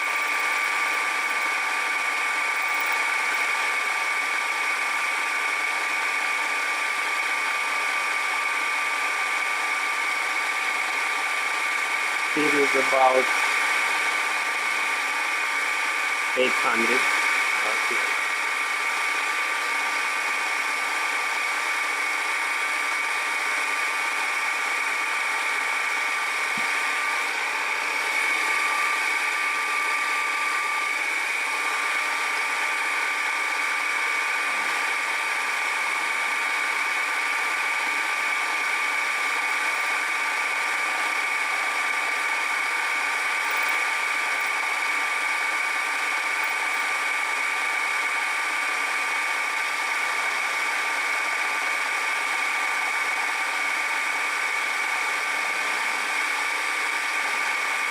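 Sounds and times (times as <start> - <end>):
machine noise: 0.0 - 5.2, 10.4 - 20.5
machine tool spindle whine: 0.0 - 57.9.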